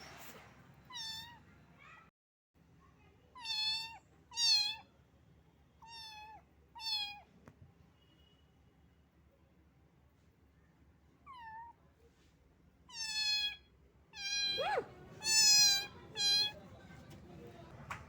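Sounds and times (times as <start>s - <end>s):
kitten meowing: 0.9s - 1.4s, 3.4s - 4.8s, 5.8s - 7.2s, 11.3s - 11.8s, 12.9s - 13.6s, 14.2s - 16.6s.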